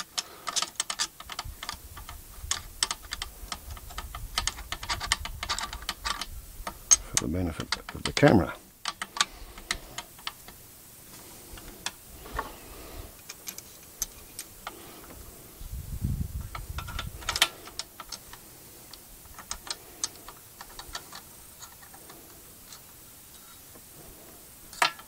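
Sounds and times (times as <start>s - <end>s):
metal parts and tools clicking: 0.0s - 10.6s, 16.5s - 23.6s, 24.7s - 25.0s.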